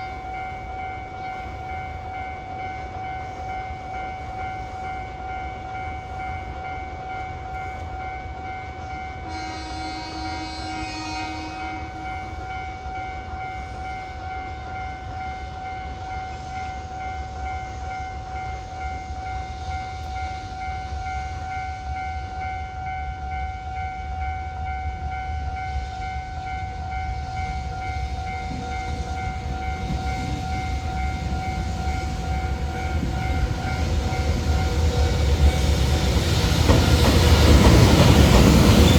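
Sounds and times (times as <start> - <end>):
level crossing warning bell: 0.0 - 38.9
train rumbling: 0.0 - 38.9
train horn: 8.9 - 13.7.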